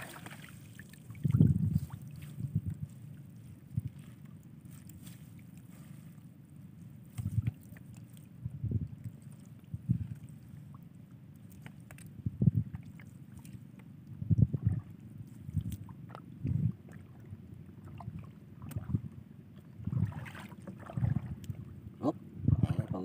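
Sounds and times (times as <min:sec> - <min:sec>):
water slapping against boat hull: 0:00.0 - 0:02.9, 0:17.8 - 0:21.7.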